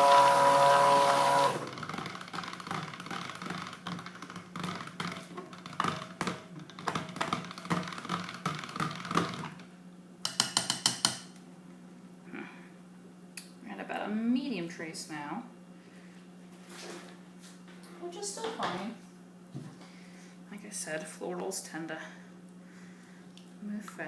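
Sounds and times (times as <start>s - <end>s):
stick blender motor: 0.0s - 5.4s.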